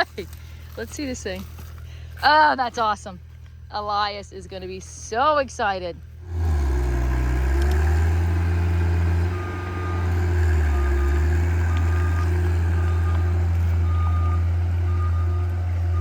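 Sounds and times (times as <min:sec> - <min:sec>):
diesel engine running under load: 0:00.0 - 0:16.0
reversing alarm beeps: 0:09.2 - 0:16.0.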